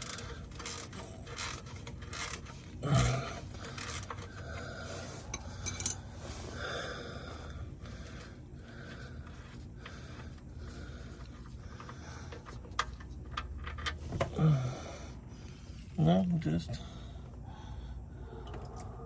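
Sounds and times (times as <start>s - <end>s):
rubbing and scraping handling noise: 0.0s - 4.4s, 7.8s - 14.3s.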